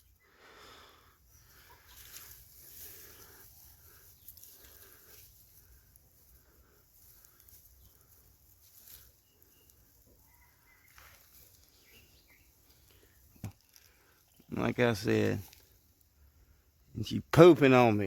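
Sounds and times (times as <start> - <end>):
faint bird chirps: 1.2 - 2.4, 7.3 - 14.6.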